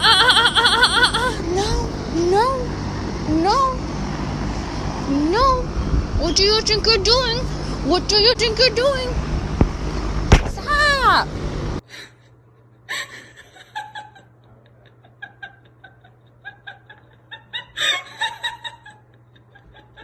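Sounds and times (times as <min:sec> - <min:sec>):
person laughing: 0:00.0 - 0:01.9, 0:12.9 - 0:20.0.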